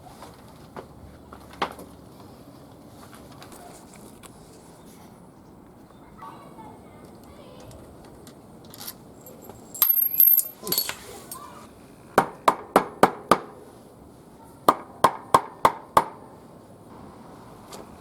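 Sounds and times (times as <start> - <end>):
metal tools clinking: 8.7 - 11.6.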